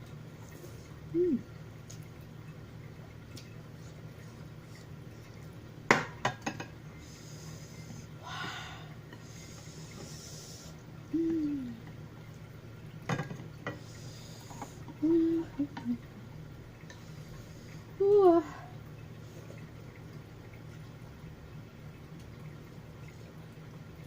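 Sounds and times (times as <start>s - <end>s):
person humming mm: 1.1s - 1.6s, 11.1s - 11.8s, 15.0s - 16.0s.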